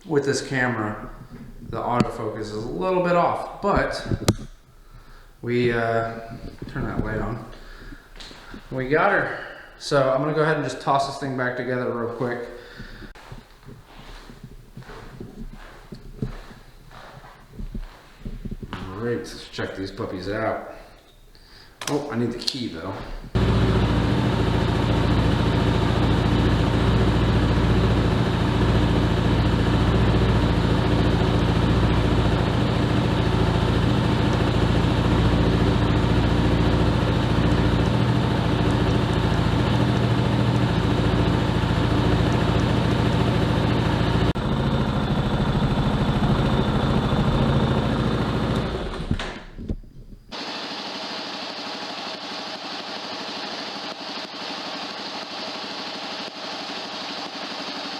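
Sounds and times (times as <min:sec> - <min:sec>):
motorcycle engine idling: 0:23.3 - 0:49.1.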